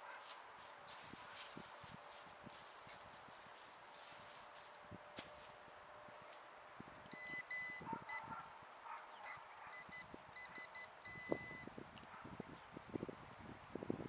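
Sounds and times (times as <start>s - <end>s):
metal detector beeps: 7.1s - 8.2s, 9.3s - 11.7s.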